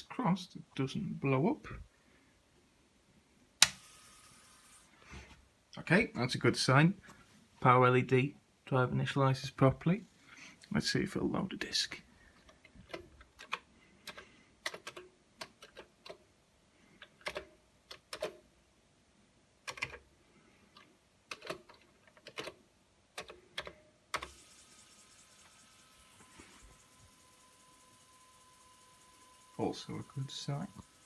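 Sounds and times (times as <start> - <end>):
floppy drive whirring: 3.6 - 4.9, 12.0 - 18.5, 19.6 - 31.0.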